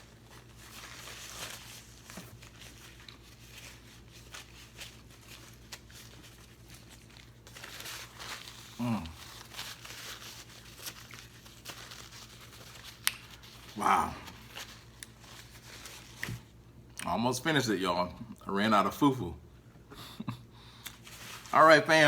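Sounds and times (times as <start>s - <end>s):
light crinkling: 0.1s - 16.5s
soft chewing: 2.1s - 17.1s, 20.3s - 21.5s
person humming: 8.8s - 9.3s, 13.8s - 14.4s.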